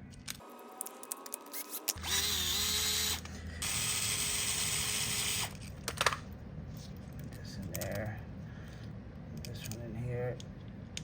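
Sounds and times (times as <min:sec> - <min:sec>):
small mechanism working: 0:00.3 - 0:05.7.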